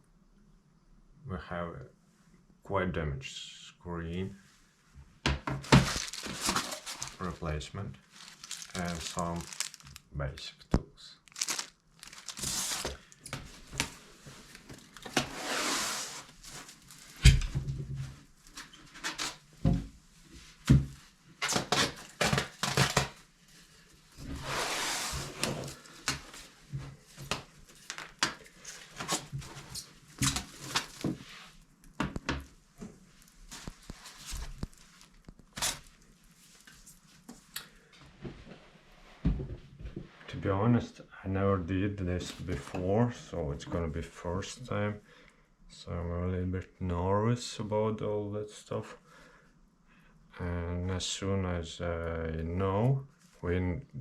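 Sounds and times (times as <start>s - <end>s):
rustling: 5.6s - 7.4s, 8.0s - 10.1s, 11.2s - 17.4s, 32.9s - 37.5s.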